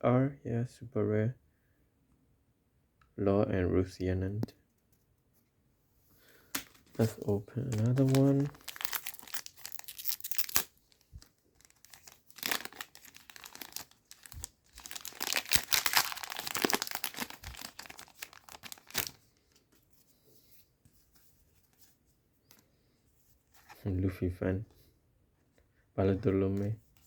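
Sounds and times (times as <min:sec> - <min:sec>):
foil card pack crinkling and tearing: 0:06.5 - 0:19.5.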